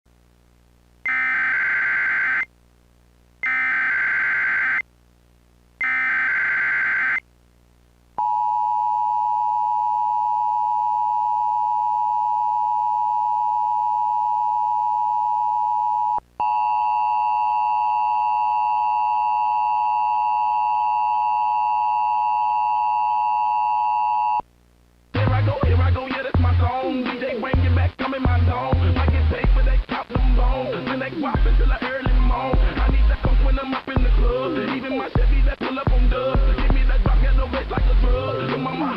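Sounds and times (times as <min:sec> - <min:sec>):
hip-hop music with rapping: 0:25.2 - 0:38.9.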